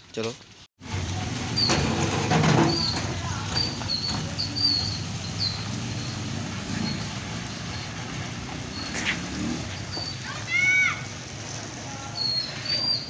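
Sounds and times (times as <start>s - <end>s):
vehicle engine rumbling: 0.0s - 13.0s.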